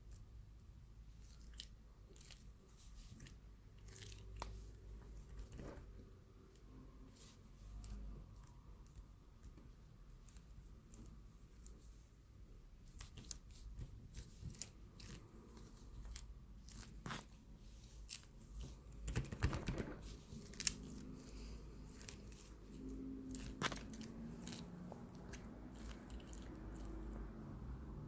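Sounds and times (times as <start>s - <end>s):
chewing and crunching: 1.2s - 4.6s, 21.8s - 27.2s.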